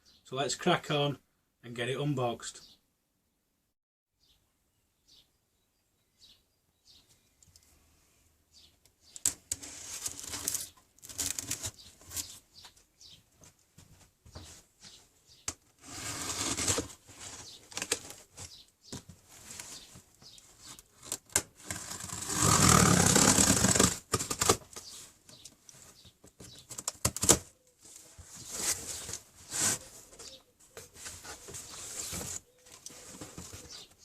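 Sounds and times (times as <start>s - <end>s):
cardboard packaging rustling: 9.5s - 12.4s, 15.8s - 34.0s.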